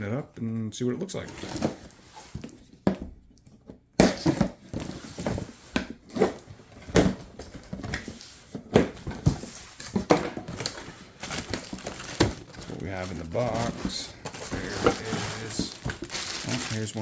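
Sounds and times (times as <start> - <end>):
cardboard box being opened: 10.4 - 17.0.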